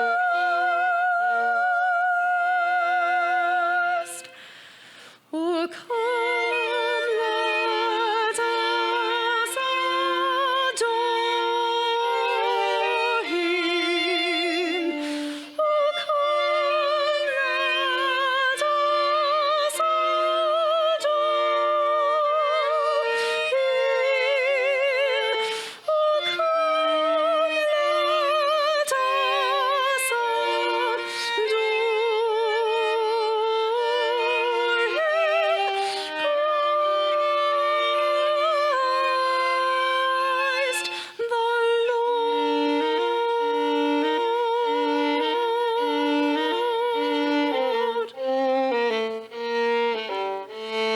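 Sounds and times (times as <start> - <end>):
slow violin melody: 0.0 - 4.6, 5.3 - 50.9.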